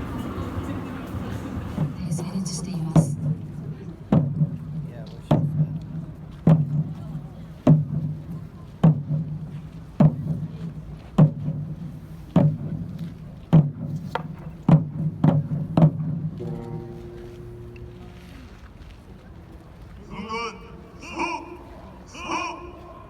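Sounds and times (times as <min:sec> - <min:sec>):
large drum beats: 0:01.0 - 0:18.6.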